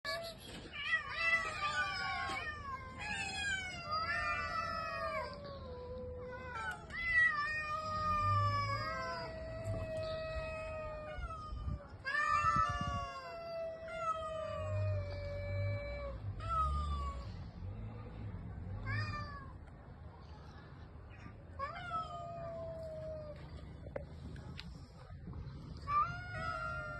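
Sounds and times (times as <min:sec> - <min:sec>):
cats meowing and yowling: 0:00.1 - 0:17.5, 0:18.8 - 0:19.7, 0:21.2 - 0:23.6, 0:25.5 - 0:26.9.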